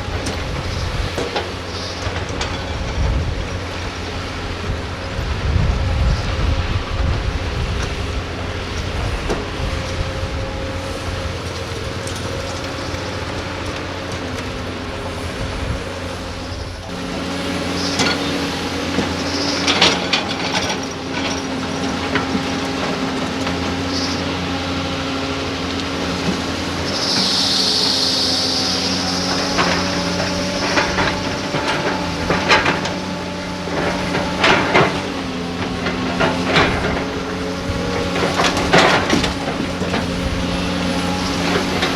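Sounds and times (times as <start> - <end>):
excavator diesel engine: 0.0 - 41.9
hiss: 26.9 - 29.1.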